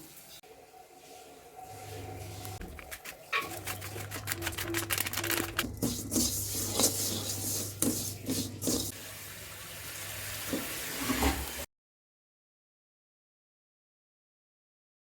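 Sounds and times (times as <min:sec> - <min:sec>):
water running from a tap: 0:01.7 - 0:11.7.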